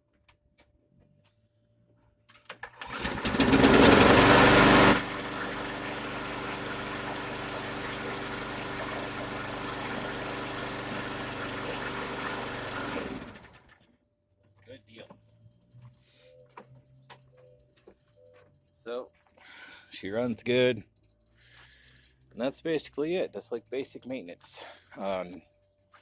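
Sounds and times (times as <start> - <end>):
lawn mower engine running: 2.6 - 13.8.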